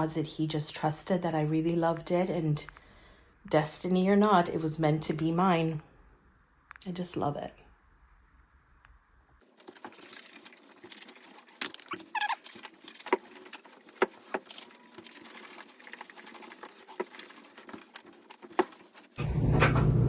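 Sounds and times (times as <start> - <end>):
rustling: 9.4 - 19.2.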